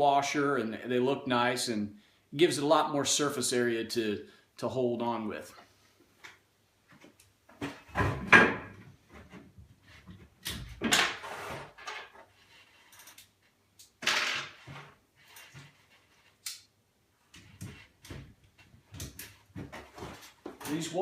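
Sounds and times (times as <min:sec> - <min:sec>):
tools being handled: 0:11.7 - 0:16.7.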